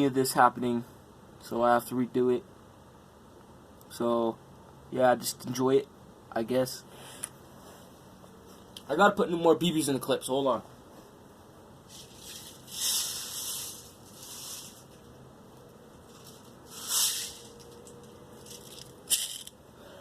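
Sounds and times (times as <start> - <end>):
bbs rattling into magazine: 16.1 - 19.6.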